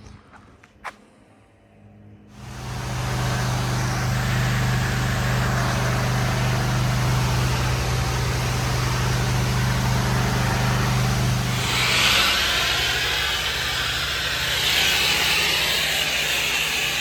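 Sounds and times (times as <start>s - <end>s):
hiss of spraying water: 2.4s - 17.0s
pressure washer engine running: 2.4s - 17.0s.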